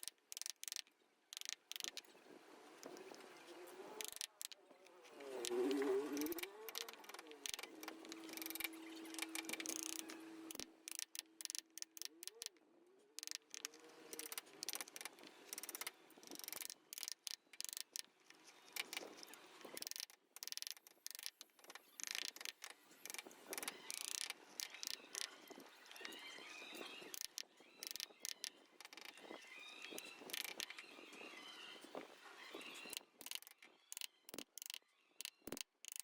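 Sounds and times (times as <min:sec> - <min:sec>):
steady hum: 0:05.5 - 0:12.0.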